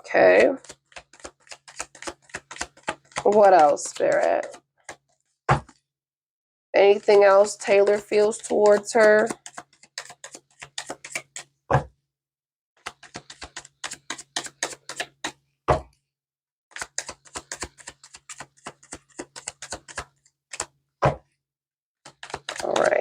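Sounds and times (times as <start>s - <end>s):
cards shuffling: 0.6s - 5.0s, 7.0s - 11.5s, 12.8s - 15.4s, 16.7s - 20.7s, 22.1s - 23.0s.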